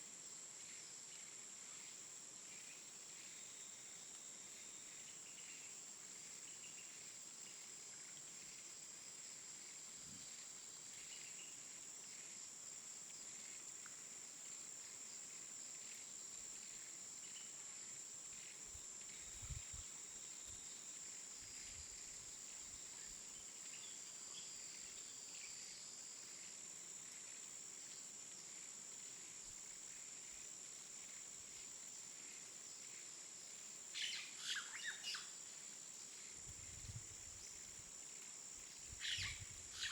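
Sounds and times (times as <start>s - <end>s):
bird chirps: 39.0s - 39.9s.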